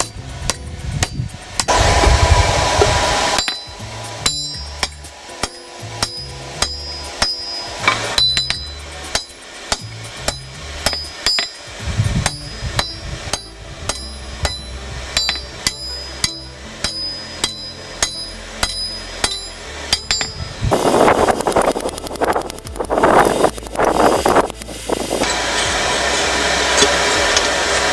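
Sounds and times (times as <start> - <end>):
hammer striking steel on anvil: 3.3 - 20.3.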